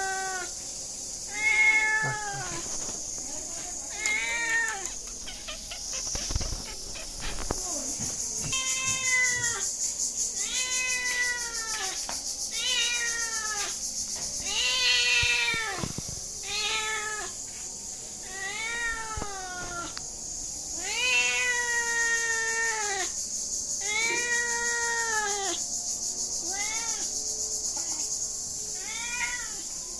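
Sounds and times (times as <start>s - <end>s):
steady high-pitched hiss: 0.0s - 29.9s
cat meowing: 1.3s - 2.7s, 3.9s - 7.5s, 8.5s - 9.6s, 10.4s - 13.7s, 14.4s - 15.8s, 18.2s - 20.0s, 28.8s - 29.6s.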